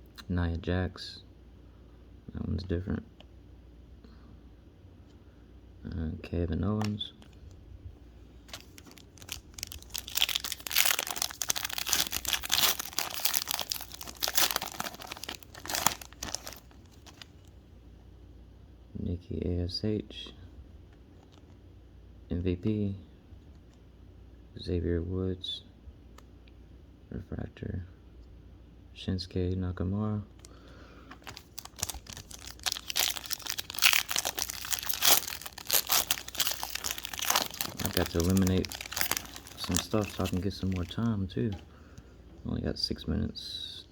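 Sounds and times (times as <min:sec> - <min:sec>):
plastic wrapper crinkling: 0:08.4 - 0:17.5, 0:30.4 - 0:41.6.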